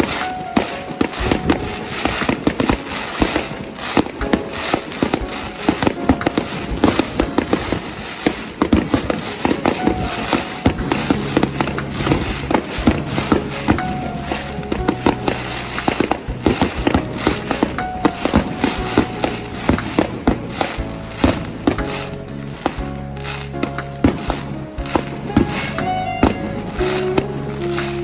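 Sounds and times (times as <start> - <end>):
fireworks bangs and crackles: 0.0 - 22.0.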